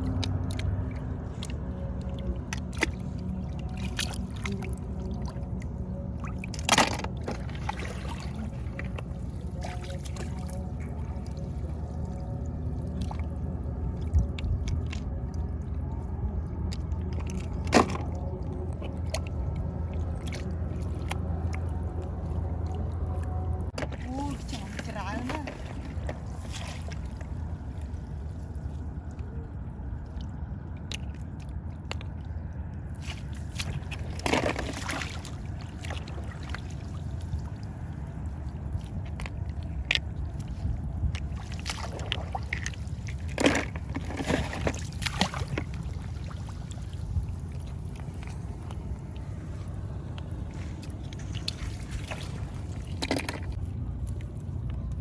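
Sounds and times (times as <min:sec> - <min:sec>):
steady low rumble: 0:00.0 - 0:55.0
hands splashing in muddy water: 0:38.8 - 0:49.4, 0:50.3 - 0:53.6.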